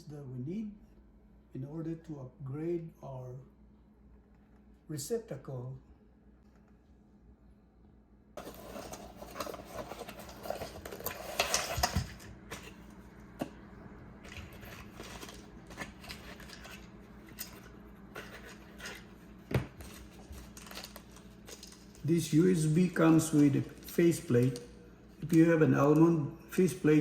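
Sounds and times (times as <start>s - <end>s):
objects rustling and scraping: 8.4s - 13.6s, 14.2s - 26.1s.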